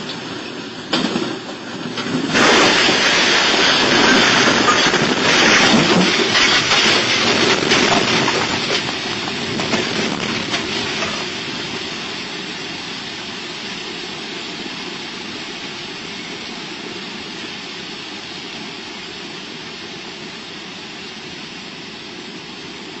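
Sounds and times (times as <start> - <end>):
train rumbling: 0.0 - 23.0.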